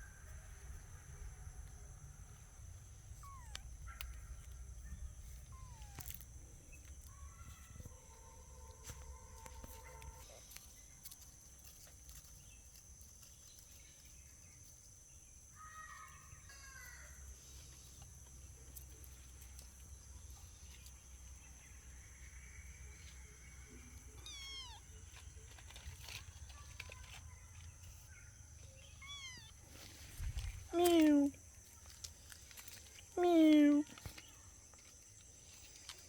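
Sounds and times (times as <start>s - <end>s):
cat meowing: 3.2s - 3.7s, 5.4s - 6.2s, 24.2s - 25.0s, 28.9s - 29.7s.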